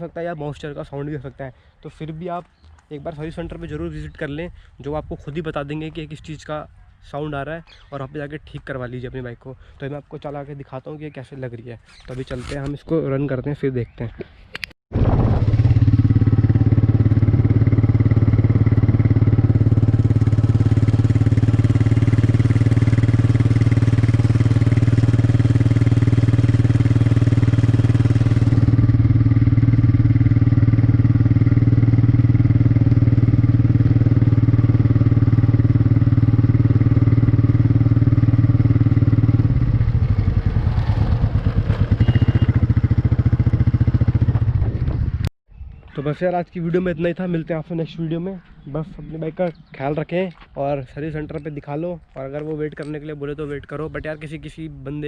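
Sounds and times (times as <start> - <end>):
motorcycle engine running: 15.0 - 45.3.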